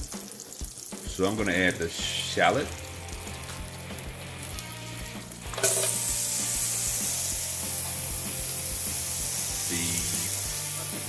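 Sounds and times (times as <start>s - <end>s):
shallot sizzling in hot oil: 0.0s - 11.0s.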